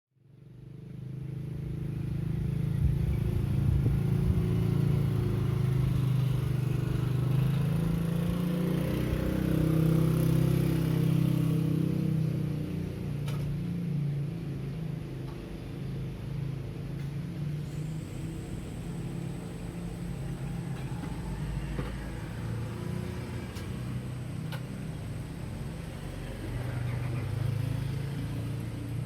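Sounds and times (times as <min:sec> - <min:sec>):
vehicle engine running: 0:00.2 - 0:29.0.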